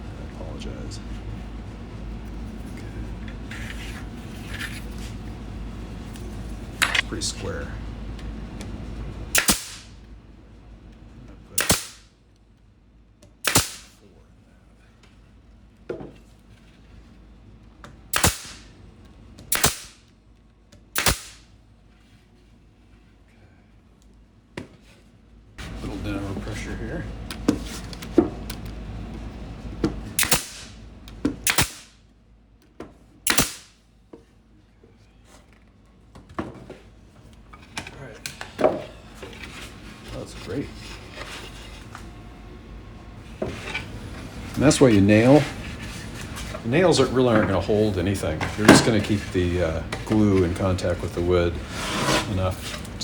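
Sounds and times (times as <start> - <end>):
nail gun firing: 9.3 - 9.9, 11.6 - 12.1, 13.4 - 14.0, 18.1 - 18.7, 19.5 - 20.0, 21.0 - 21.5, 30.2 - 30.8, 31.4 - 31.9, 33.3 - 33.7.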